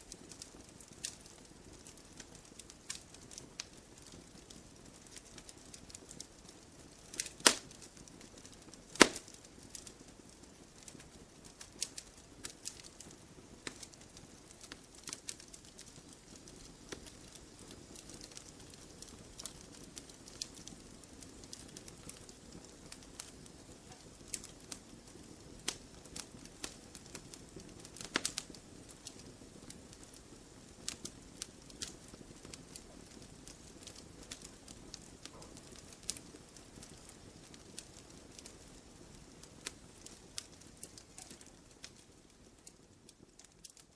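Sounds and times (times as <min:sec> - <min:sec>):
campfire logs crackling: 0:00.0 - 0:43.9
loud wood pops: 0:07.2 - 0:07.6, 0:09.0 - 0:09.3.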